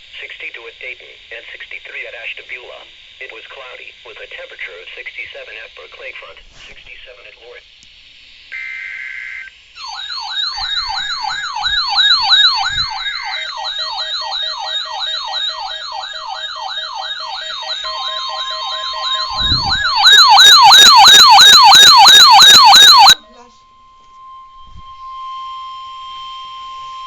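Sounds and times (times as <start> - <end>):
electronic siren yelping: 8.5 - 27.0.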